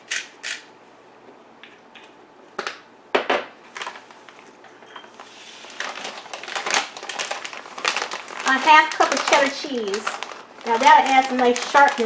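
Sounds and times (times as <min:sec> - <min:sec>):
kitchen items knocking on counter: 0:03.1 - 0:03.5
plastic package rustling: 0:03.6 - 0:12.0.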